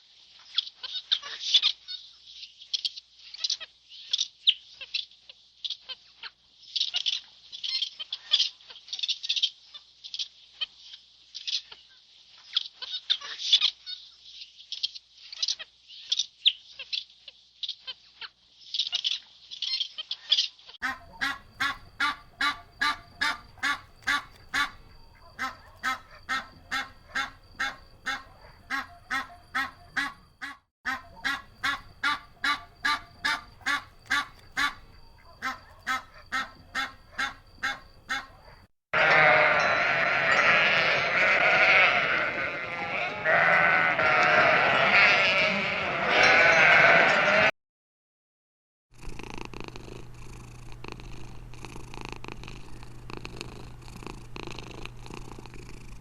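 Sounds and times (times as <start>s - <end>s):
high-pitched chirping: 20.8s - 38.4s
repeated animal calls: 20.8s - 47.5s
sheep bleating: 39.0s - 47.5s.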